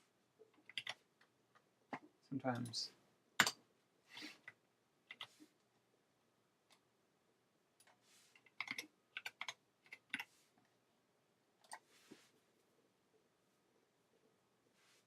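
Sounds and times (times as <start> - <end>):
computer keyboard keystrokes: 0.6 - 1.0, 8.4 - 10.3.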